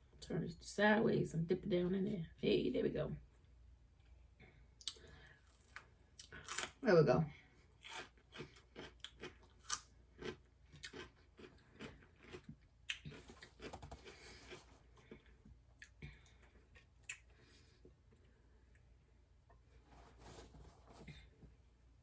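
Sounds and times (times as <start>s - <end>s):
person chewing food: 4.8s - 6.8s, 7.7s - 18.9s.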